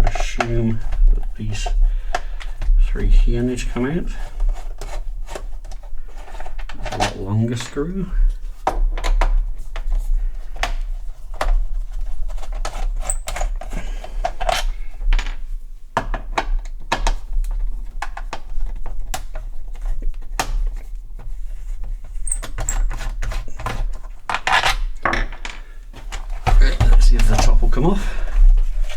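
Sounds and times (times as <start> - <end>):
steady low hum: 24.9 - 28.9.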